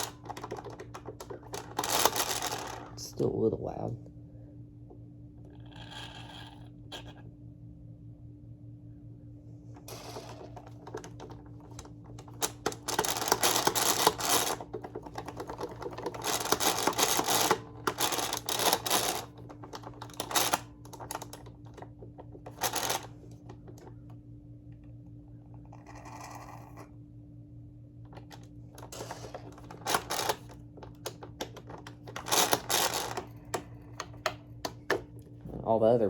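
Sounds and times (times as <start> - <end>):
vacuum wheels rattling and clicking: 0.0 - 3.1, 9.9 - 23.9, 28.1 - 35.1.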